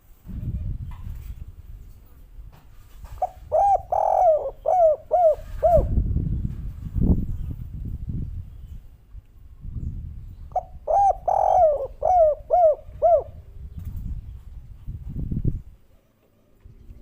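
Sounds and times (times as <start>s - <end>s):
low rumble of wind: 0.0s - 17.0s
dove cooing: 3.2s - 6.0s, 10.5s - 13.5s.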